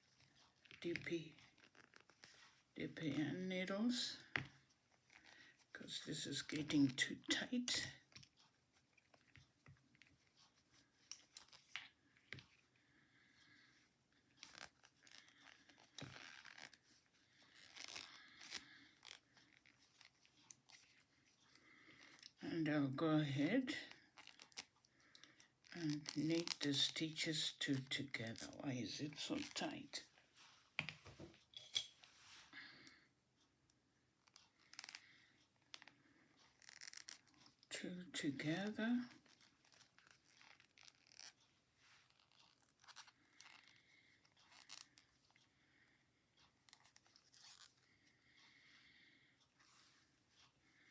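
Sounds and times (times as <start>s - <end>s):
yarn rustling: 0.0s - 22.4s.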